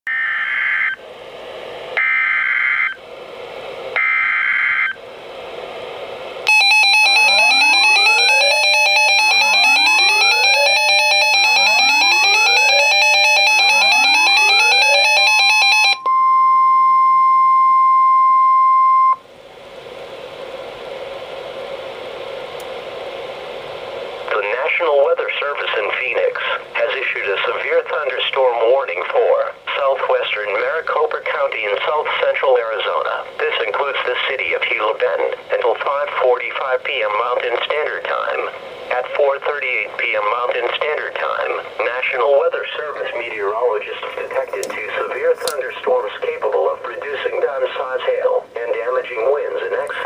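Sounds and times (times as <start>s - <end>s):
steady warning tone: 6.4s - 19.2s
electronic alert with rising sweeps: 6.5s - 16.0s
radio hiss: 19.8s - 50.0s.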